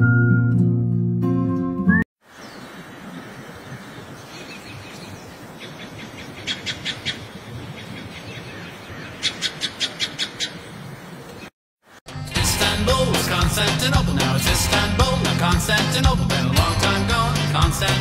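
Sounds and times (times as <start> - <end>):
outdoor background noise: 2.2 - 12.0
bird chirping: 2.3 - 11.5.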